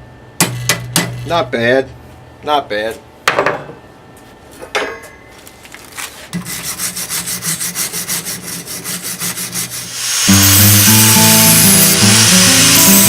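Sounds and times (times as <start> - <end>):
sawing strokes: 6.3 - 13.0.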